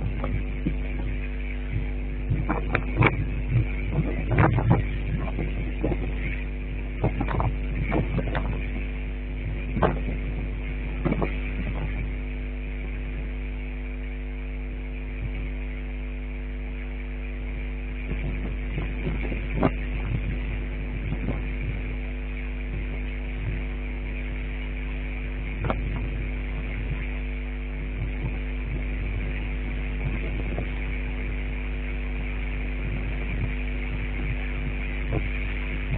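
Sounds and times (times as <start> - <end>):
steady motor hum: 0.0 - 35.9.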